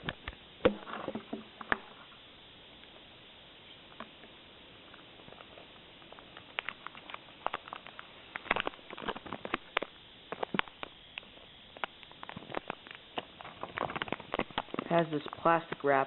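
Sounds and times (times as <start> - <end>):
plastic packaging crinkling: 5.2 - 15.8.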